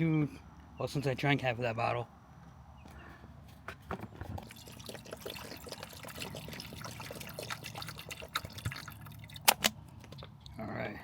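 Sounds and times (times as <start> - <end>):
water gurgling from a bottle: 4.3 - 9.6.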